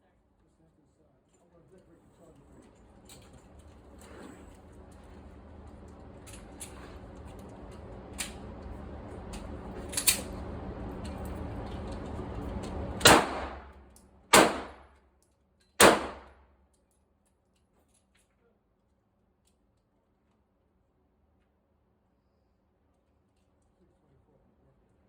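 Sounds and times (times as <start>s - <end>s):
sharp cracks: 13.0s - 14.9s, 15.8s - 16.4s
pistol shots echoing: 13.1s - 13.7s, 14.3s - 14.8s, 15.8s - 16.3s.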